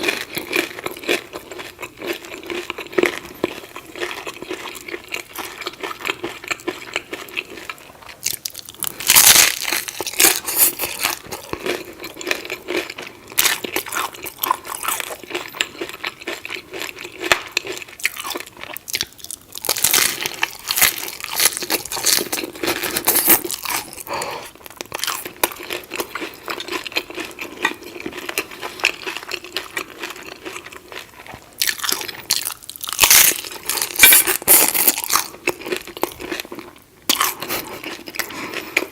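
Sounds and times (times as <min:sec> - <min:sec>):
person chewing crunchy food: 0:00.0 - 0:38.9.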